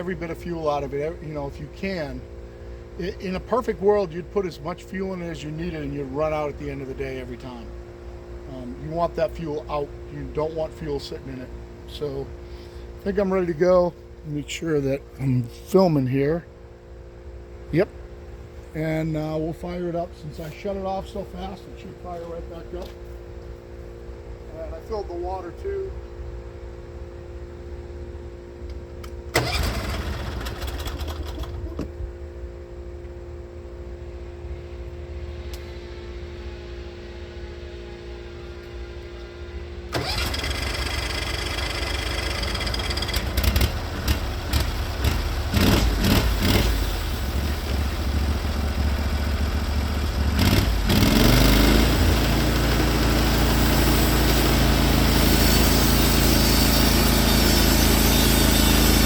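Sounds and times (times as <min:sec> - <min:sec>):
sawmill gas engine starting: 0:29.0 - 0:31.8, 0:39.9 - 0:59.0.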